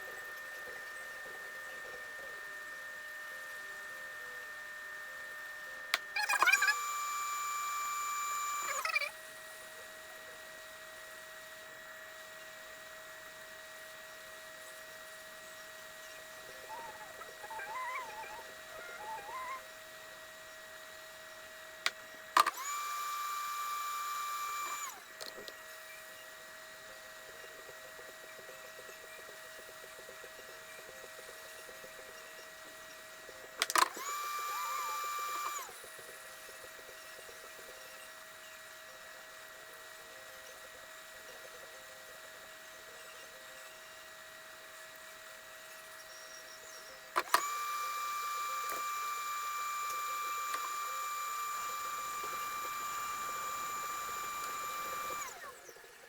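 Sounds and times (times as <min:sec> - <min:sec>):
small motor whining: 0:00.0 - 0:56.0
faint chirps: 0:16.0 - 0:19.7
click: 0:21.8 - 0:22.7, 0:33.6 - 0:34.1, 0:47.2 - 0:47.5.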